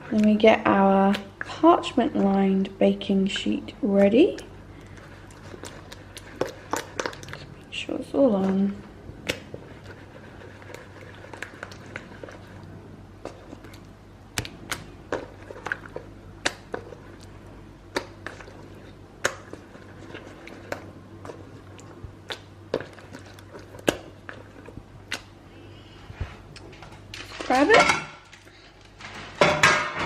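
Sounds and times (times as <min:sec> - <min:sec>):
low steady hum: 0:00.0 - 0:30.0.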